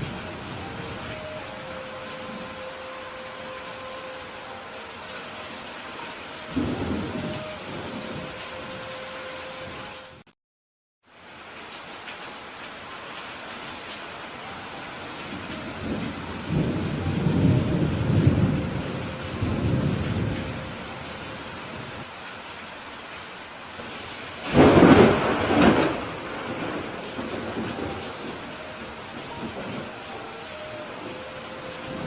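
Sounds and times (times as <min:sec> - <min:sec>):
steady rain: 0:00.0 - 0:10.3, 0:11.0 - 0:32.0
low rolling thunder: 0:06.5 - 0:08.8, 0:15.3 - 0:22.0, 0:23.8 - 0:32.0
sharp thunderclap: 0:24.4 - 0:28.4.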